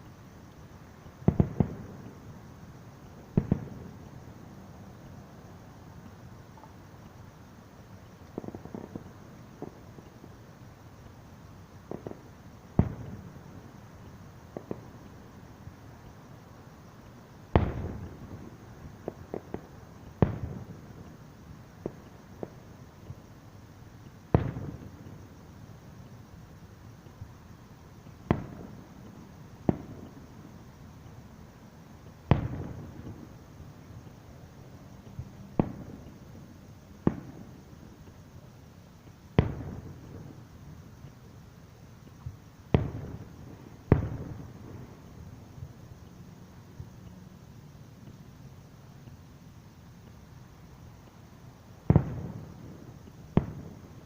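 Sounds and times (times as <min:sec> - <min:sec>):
firework pops: 0:01.2 - 0:02.2, 0:03.2 - 0:04.2, 0:08.0 - 0:10.2, 0:11.8 - 0:13.3, 0:14.0 - 0:15.3, 0:17.0 - 0:21.2, 0:21.8 - 0:23.3, 0:24.0 - 0:25.3, 0:28.0 - 0:30.5, 0:32.0 - 0:33.4, 0:35.0 - 0:36.4, 0:37.0 - 0:38.2, 0:39.3 - 0:41.2, 0:42.0 - 0:46.1, 0:51.8 - 0:54.0
firework shells booming: 0:51.9 - 0:54.0.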